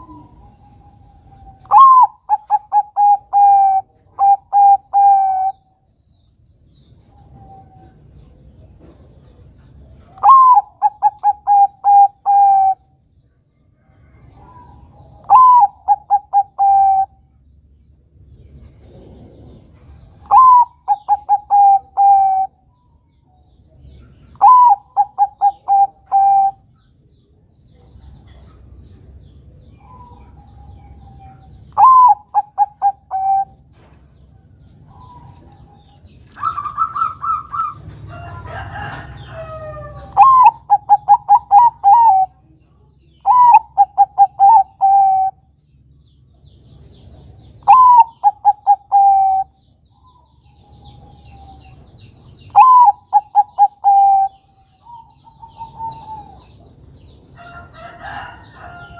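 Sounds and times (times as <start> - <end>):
dove cooing: 0.0 - 5.6, 10.1 - 12.9, 14.2 - 17.2, 18.8 - 22.6, 24.0 - 26.6, 29.8 - 33.9, 34.8 - 42.4, 43.2 - 45.4, 47.6 - 51.8, 52.5 - 56.7
soft bird sounds: 0.0 - 58.9.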